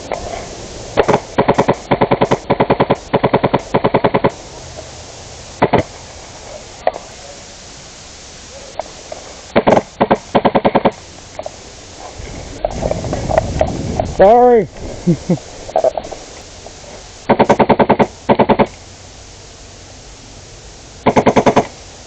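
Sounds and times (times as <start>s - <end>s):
airsoft gun full-auto bursts: 1.0s - 4.4s, 5.6s - 5.9s, 9.5s - 11.0s, 17.3s - 18.8s, 21.0s - 21.8s
airsoft gun single shots: 1.0s - 4.4s, 5.6s - 5.9s, 9.6s - 11.0s, 17.3s - 18.7s, 21.0s - 21.8s.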